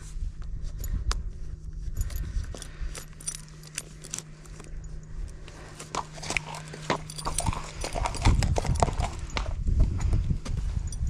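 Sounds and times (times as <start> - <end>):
low rumble: 0.0 - 11.0
metal tack jingling: 1.9 - 9.6.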